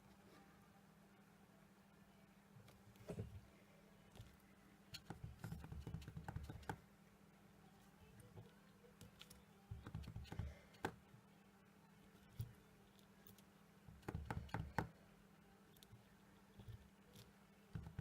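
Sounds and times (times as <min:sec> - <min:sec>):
acrylic block tapping on tabletop: 0:05.0 - 0:06.8, 0:13.9 - 0:14.9.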